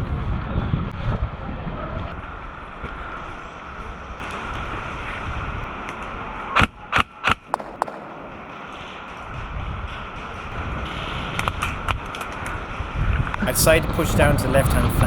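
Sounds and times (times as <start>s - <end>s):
airsoft gun shots: 7.5s - 9.3s.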